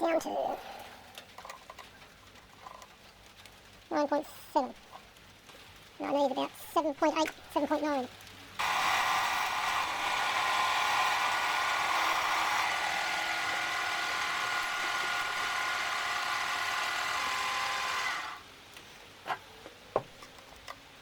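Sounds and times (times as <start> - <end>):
lathe whining while cutting steel: 8.6 - 18.4.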